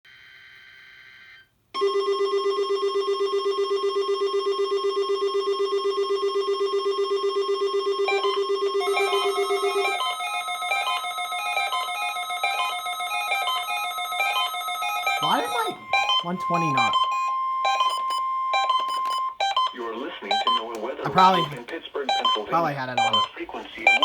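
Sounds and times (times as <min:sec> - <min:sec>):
stepping beep alarm: 0:05.4 - 0:23.3
pulsing buzz alarm: 0:07.6 - 0:19.6
faint electronic tones: 0:08.1 - 0:23.3.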